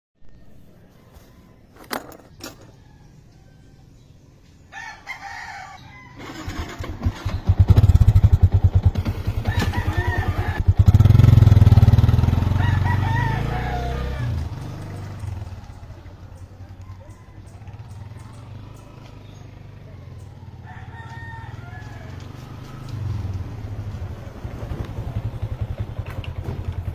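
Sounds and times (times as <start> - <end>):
rooster crowing: 2.6 - 4.0, 4.7 - 6.8, 9.3 - 10.8, 12.3 - 14.6, 15.4 - 18.5, 19.9 - 22.6
motorcycle engine revving: 6.2 - 26.9.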